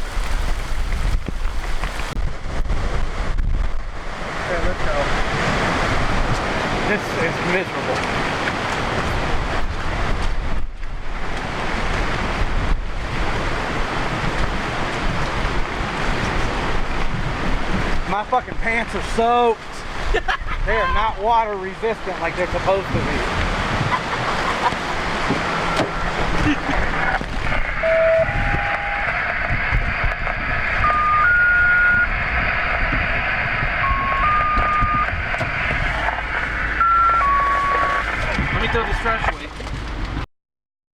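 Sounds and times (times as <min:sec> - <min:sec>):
heavy rain hissing: 0:00.0 - 0:02.2, 0:21.7 - 0:39.2
heavy rain: 0:00.0 - 0:40.2
storm runoff rushing: 0:00.0 - 0:40.2
wind buffeting microphone: 0:00.0 - 0:40.2
short electronic beeps: 0:25.4 - 0:26.5, 0:27.7 - 0:29.2, 0:30.8 - 0:32.1, 0:33.8 - 0:35.2, 0:36.7 - 0:38.1.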